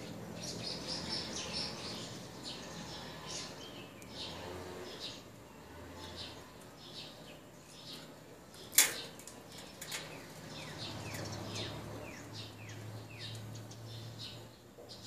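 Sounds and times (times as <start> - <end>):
small bird chirping: 0.0 - 15.0.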